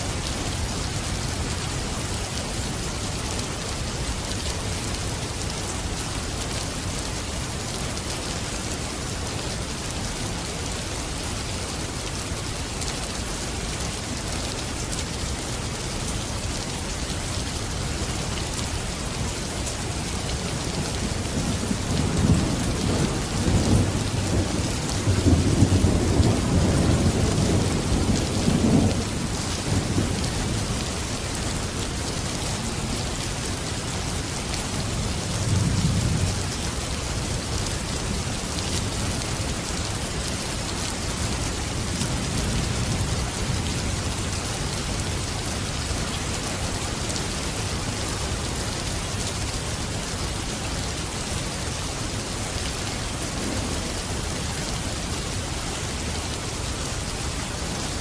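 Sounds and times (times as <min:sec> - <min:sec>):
steady rain: 0:00.0 - 0:58.0.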